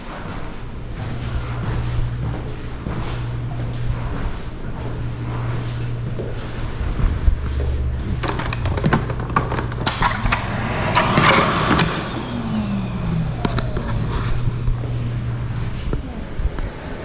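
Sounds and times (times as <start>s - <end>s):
noisy rattling: 0.0s - 17.0s
steady low hum: 0.0s - 17.0s
sharp clicks and knocks: 0.2s - 16.7s.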